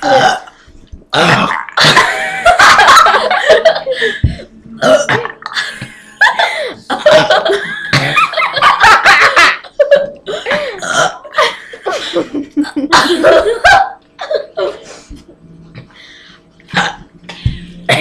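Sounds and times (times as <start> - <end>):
people burping loudly: 0.0 - 2.2, 4.2 - 5.9, 6.7 - 8.6, 10.3 - 11.4, 16.7 - 17.1
people laughing: 1.8 - 4.5, 5.2 - 15.4.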